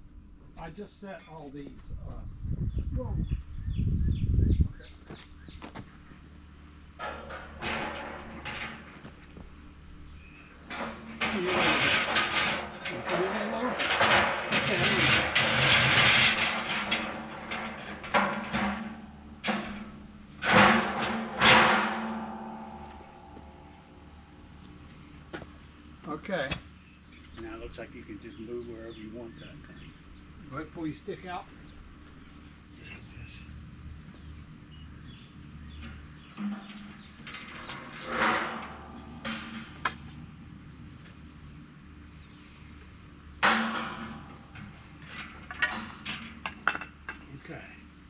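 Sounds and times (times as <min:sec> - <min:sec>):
heavy parts knocking: 0:07.0 - 0:09.6, 0:10.6 - 0:24.2
scraping: 0:07.0 - 0:25.6, 0:35.7 - 0:41.4, 0:43.4 - 0:48.0.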